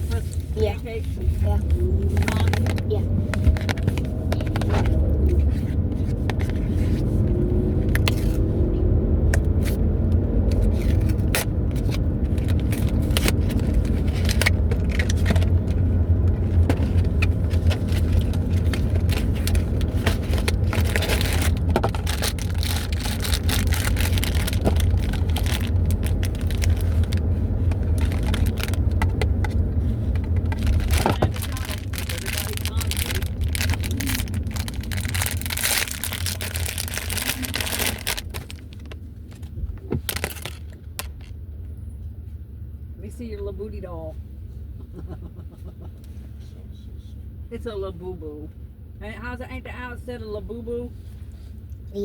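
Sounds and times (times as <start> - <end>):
car road noise inside cabin: 0.0 - 52.0
clicks and scrapes of handling: 2.0 - 8.5, 10.4 - 31.5.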